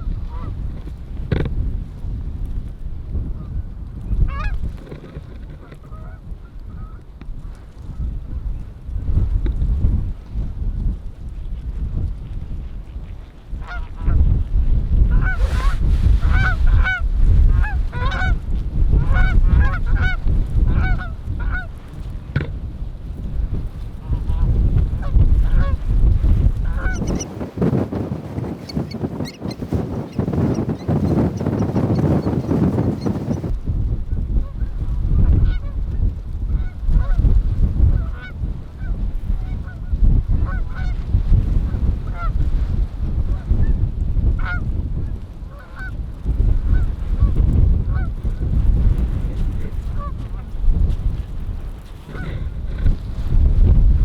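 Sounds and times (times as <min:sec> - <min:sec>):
wind rumble on microphone: 0:00.0 - 0:54.0
geese honking: 0:15.1 - 0:18.4, 0:19.0 - 0:21.7, 0:26.6 - 0:27.3.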